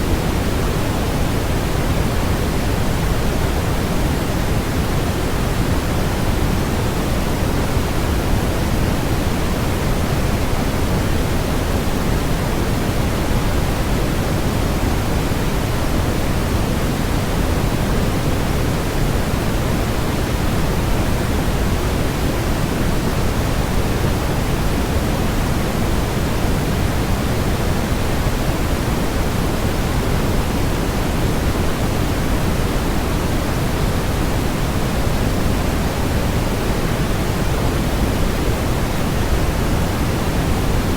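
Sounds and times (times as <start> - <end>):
white noise hiss: 0.0 - 40.9.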